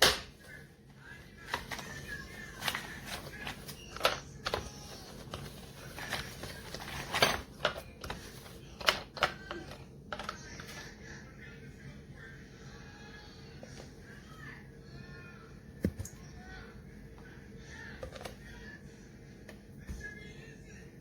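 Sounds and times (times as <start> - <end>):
plastic parts clicking and clattering: 1.4 - 10.8.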